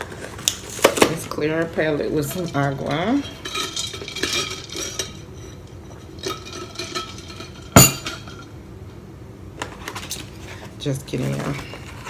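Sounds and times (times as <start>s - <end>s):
glassware clinking: 2.2s - 8.5s.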